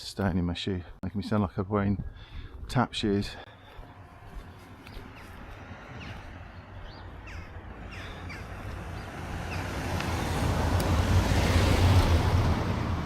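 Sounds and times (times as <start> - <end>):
falling bird calls: 3.4 - 10.6
car approaching on road: 3.5 - 13.0.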